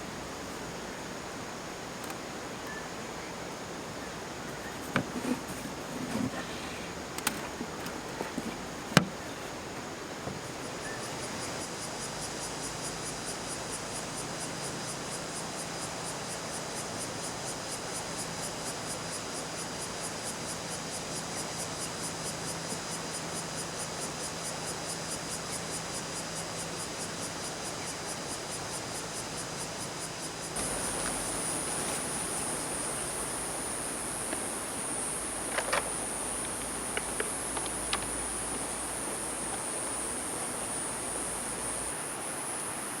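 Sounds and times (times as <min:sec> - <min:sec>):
insects chirping: 0:00.0 - 0:43.0
faint clicks: 0:02.0 - 0:02.8, 0:30.6 - 0:41.5.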